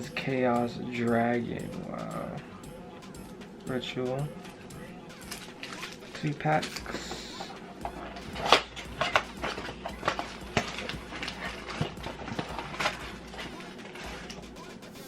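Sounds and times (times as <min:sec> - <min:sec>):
foil packs clicking: 0:05.2 - 0:14.5
packaging rustling: 0:05.2 - 0:14.6.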